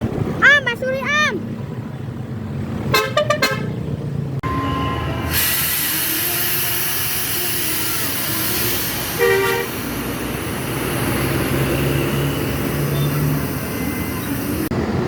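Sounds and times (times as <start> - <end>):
road traffic: 0.0 - 15.0
two-tone vehicle horn toot: 2.9 - 3.8, 4.4 - 6.4, 9.0 - 9.9
low engine drone: 4.0 - 15.0.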